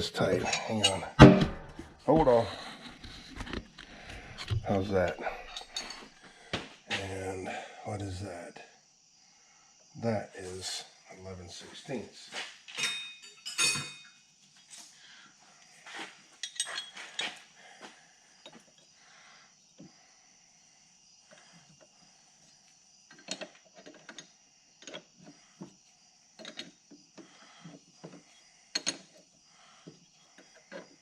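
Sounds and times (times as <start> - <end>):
wrench clinking on metal fittings: 0.4 - 1.1, 12.8 - 14.1, 16.4 - 17.4
faint high-pitched hiss: 4.4 - 30.9.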